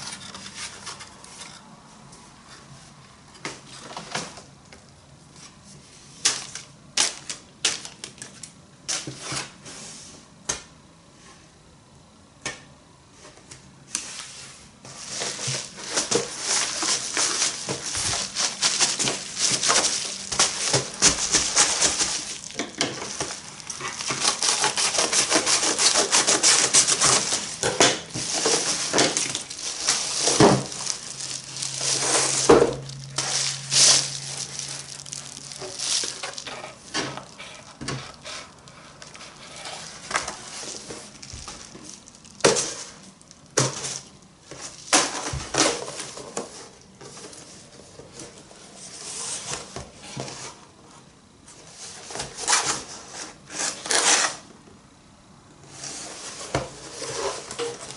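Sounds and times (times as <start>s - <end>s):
packaging rubbing and crinkling: 14.9s - 47.4s.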